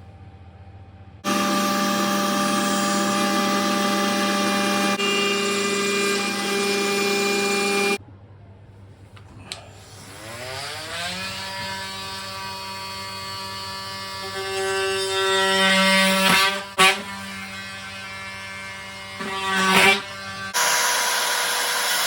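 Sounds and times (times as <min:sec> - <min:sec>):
router spindle humming: 0:01.2 - 0:08.0.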